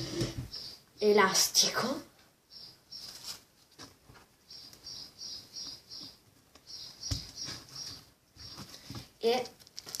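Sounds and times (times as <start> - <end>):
slime crackling and popping: 9.6 - 10.0.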